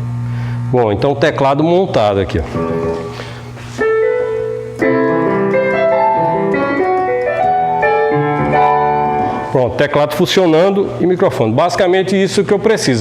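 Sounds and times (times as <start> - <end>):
electronic keyboard piano playing: 2.2 - 10.8.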